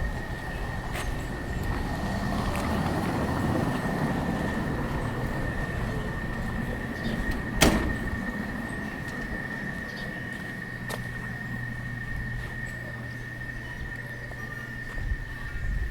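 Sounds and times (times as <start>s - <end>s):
vehicle passing with low rumble: 0.0s - 13.5s
sharp metallic bang: 7.6s - 8.3s.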